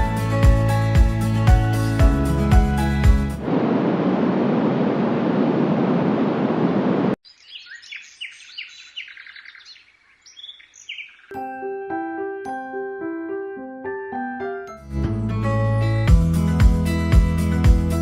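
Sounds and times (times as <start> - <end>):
birdsong chirps and tweets: 7.2 - 11.4.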